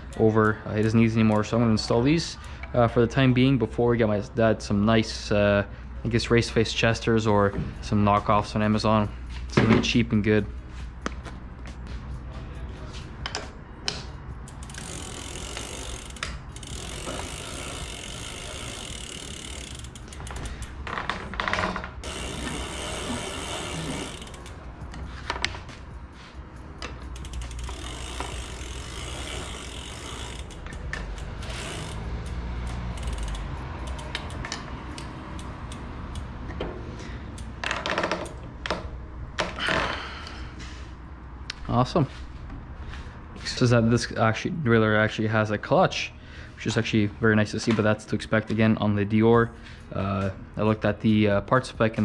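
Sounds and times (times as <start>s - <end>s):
ratcheting clicks: 13.2s - 25.5s, 26.8s - 36.6s, 37.3s - 38.8s.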